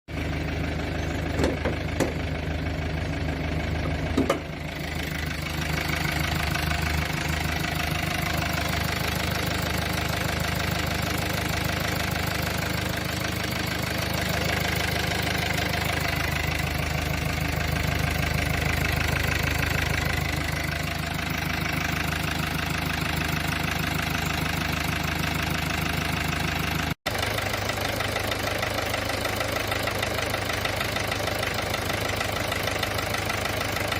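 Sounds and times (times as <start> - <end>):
diesel engine idling with knock: 0.1 - 33.9.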